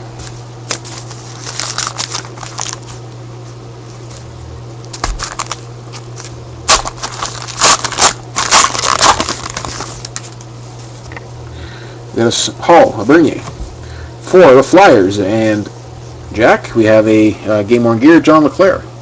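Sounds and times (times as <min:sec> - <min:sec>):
foil wrapper tearing and crinkling: 0:00.6 - 0:03.1, 0:04.9 - 0:10.4.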